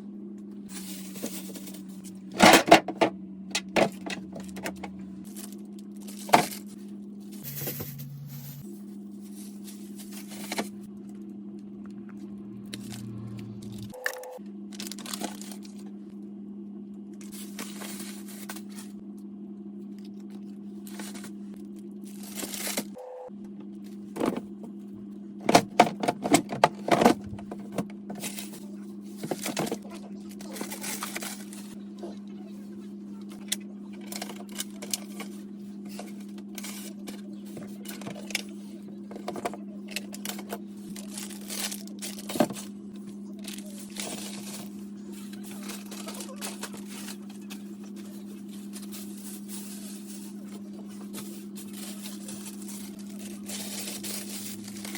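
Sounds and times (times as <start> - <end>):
steady low hum: 0.0 - 54.9
plastic bags rustling: 0.7 - 2.3, 3.8 - 6.8, 7.4 - 10.9, 14.8 - 15.8, 17.2 - 19.0, 20.8 - 22.9, 27.4 - 31.8, 34.0 - 54.9.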